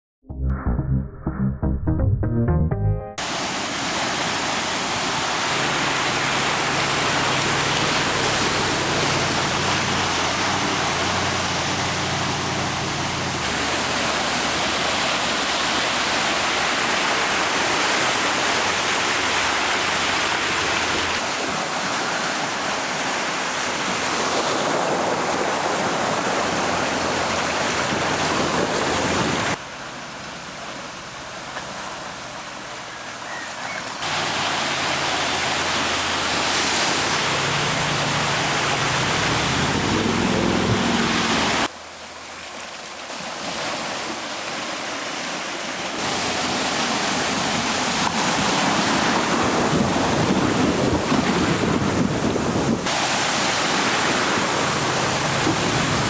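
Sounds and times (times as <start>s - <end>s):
low engine hum: 5.6s - 15.8s.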